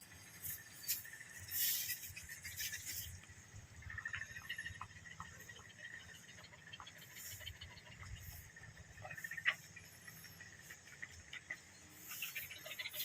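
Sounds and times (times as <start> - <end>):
scattered ticks: 0.0 - 13.0
faint high chirping: 3.8 - 13.0.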